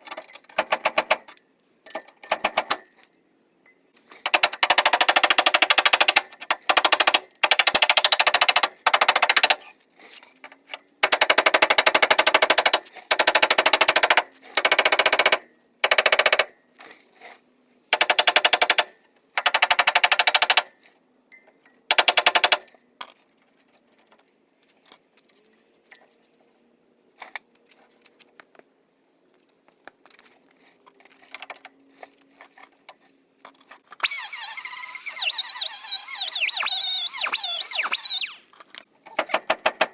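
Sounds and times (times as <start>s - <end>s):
pneumatic impact tool hammering: 22.0s - 22.6s, 34.0s - 38.6s.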